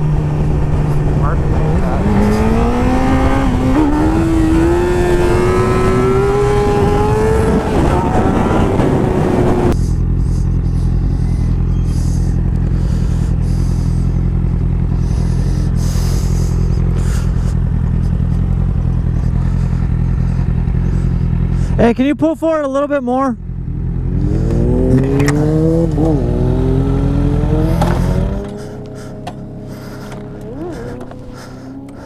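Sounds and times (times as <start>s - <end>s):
engine accelerating hard: 0.0s - 32.0s
engine idling: 9.8s - 22.6s, 27.9s - 32.0s.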